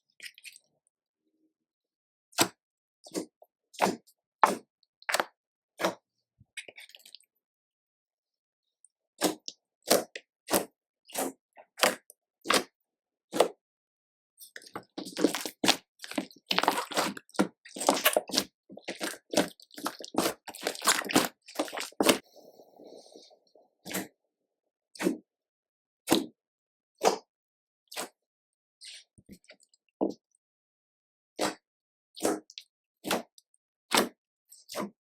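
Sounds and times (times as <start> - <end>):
wet squishing slime: 3.1 - 6.0, 6.6 - 7.3, 9.2 - 12.7, 14.5 - 24.1
slime popping: 19.0 - 22.2.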